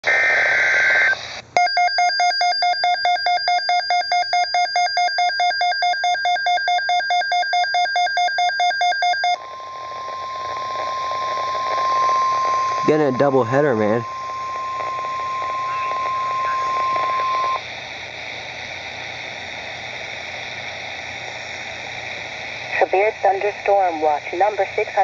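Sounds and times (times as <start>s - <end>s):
rapid electronic alarm beeps: 1.6s - 10.4s, 11.4s - 17.6s
steady alarm tone: 1.6s - 17.6s
screeching data burst: 9.3s - 23.0s.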